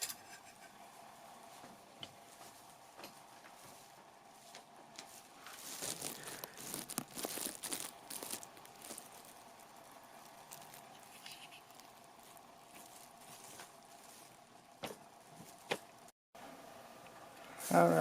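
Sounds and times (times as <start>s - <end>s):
handling rustling: 3.5s - 16.1s.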